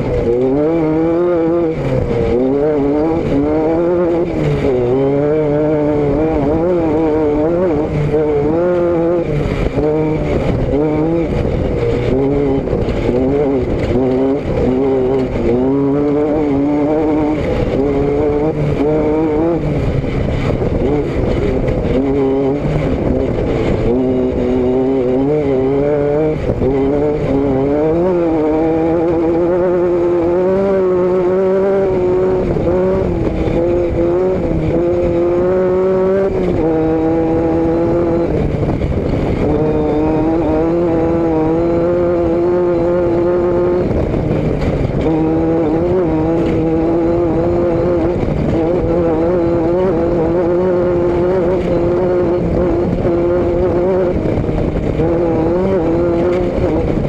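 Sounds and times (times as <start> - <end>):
vehicle engine running: 0.0 - 57.0.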